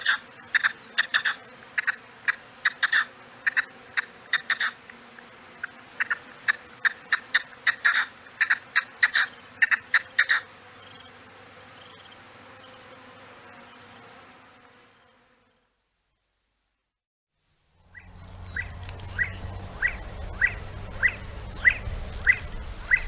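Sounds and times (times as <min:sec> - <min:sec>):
gamebird calls: 0:00.0 - 0:04.8, 0:06.0 - 0:11.1, 0:17.9 - 0:23.0.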